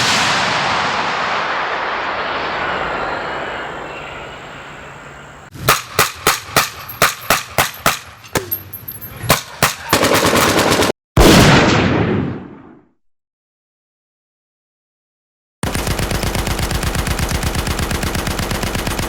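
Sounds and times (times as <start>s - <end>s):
rumble: 0.0s - 5.5s
loud blast: 0.0s - 8.5s, 11.2s - 12.8s
machine-gun burst: 9.3s - 11.8s, 15.6s - 19.0s
single gunshots: 10.8s - 12.8s.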